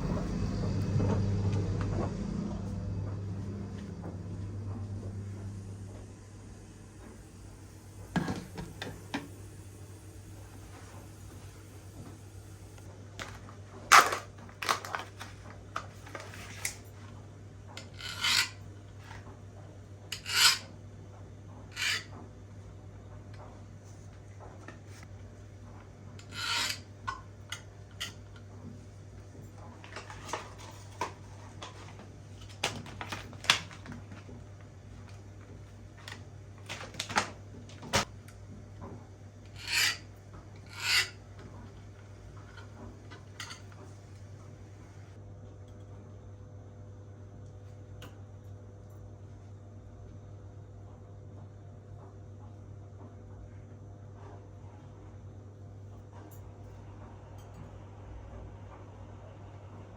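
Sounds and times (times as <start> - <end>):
steady low hum: 0.0 - 14.2.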